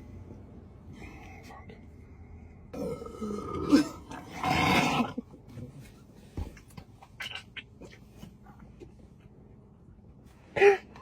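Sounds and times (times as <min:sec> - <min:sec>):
person burping: 0:02.7 - 0:05.2.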